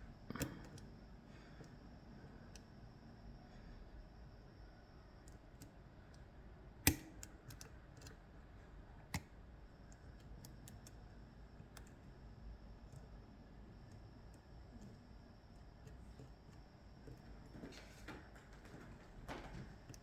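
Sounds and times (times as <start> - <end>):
lock picking tool clicks: 6.9 - 8.2.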